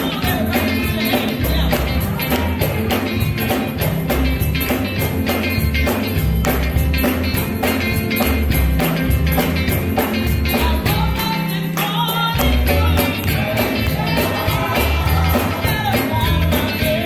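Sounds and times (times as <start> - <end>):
person singing: 0.0 - 3.7, 10.5 - 17.0
upbeat music with tambourine: 0.0 - 17.0.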